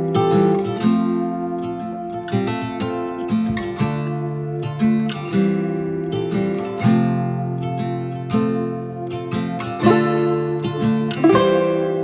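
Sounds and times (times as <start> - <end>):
acoustic guitar strumming chords: 0.0 - 12.0.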